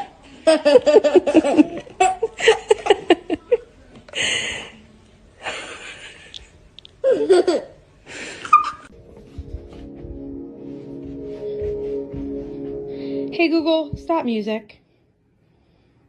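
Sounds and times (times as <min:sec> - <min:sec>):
soft music: 0:08.9 - 0:14.8.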